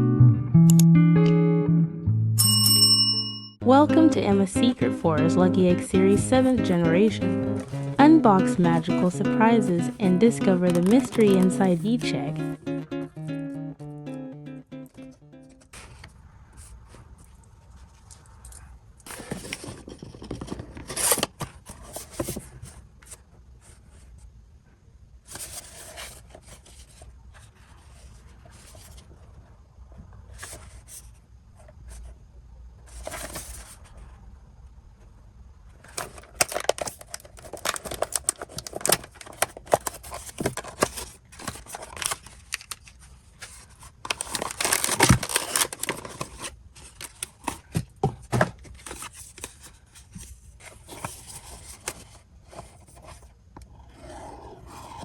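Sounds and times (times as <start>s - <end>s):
packaging crinkling and rustling: 10.7s - 11.4s, 18.1s - 23.2s, 35.8s - 53.3s
wrapping tearing: 36.2s - 43.0s, 44.1s - 47.3s.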